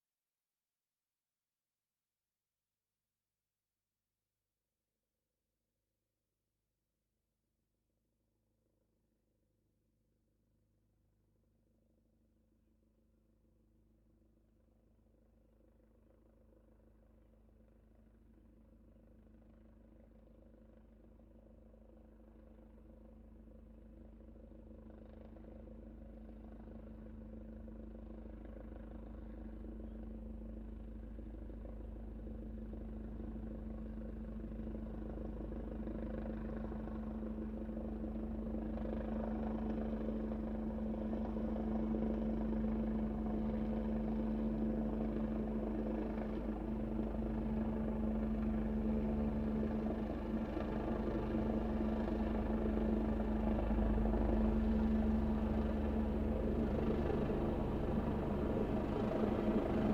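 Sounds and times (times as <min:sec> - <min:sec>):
helicopter engine and rotor drone: 0:15.1 - 0:59.9.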